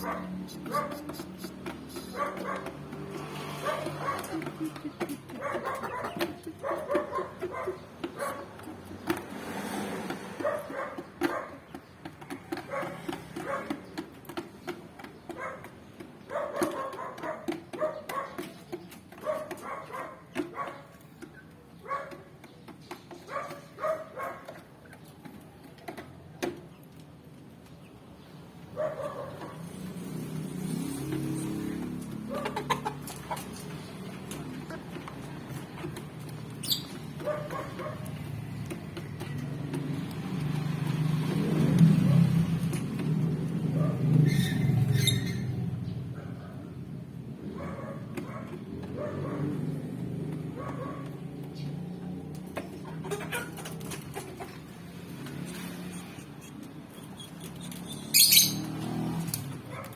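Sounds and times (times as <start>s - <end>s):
chickens clucking and cheeping: 0.0s - 59.9s.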